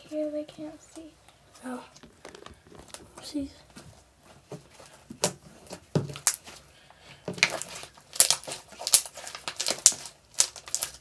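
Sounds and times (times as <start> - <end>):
slime squeezed with sticky crackles: 5.2 - 6.6, 7.4 - 11.0.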